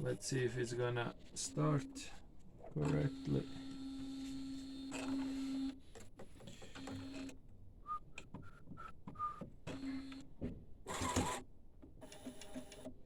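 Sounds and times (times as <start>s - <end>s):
printer motors whining: 0.0s - 7.4s, 8.4s - 10.2s, 10.9s - 11.4s.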